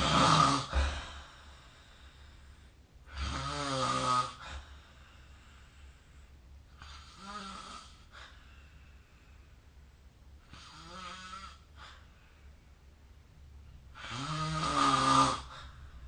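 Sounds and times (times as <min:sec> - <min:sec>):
person snoring faintly: 0:00.0 - 0:01.3.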